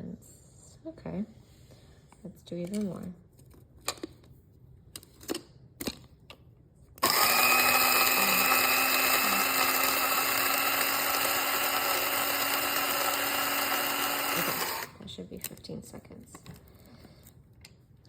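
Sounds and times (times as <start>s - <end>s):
electric coffee grinder running: 7.0s - 15.0s.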